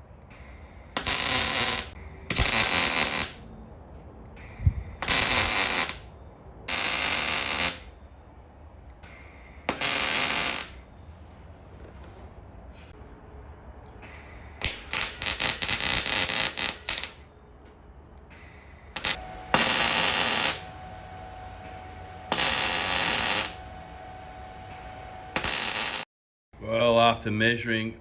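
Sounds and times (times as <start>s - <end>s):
welder crackling bursts: 0.3s - 3.5s, 4.4s - 6.1s, 6.7s - 7.9s, 9.1s - 10.8s, 14.0s - 17.3s, 18.3s - 26.1s.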